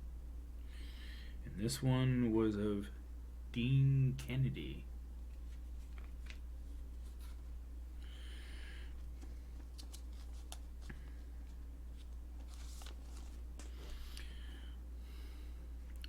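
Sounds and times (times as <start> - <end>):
low electrical hum: 0.0 - 16.0
cards rustling and clicking: 5.3 - 7.5, 9.0 - 14.0.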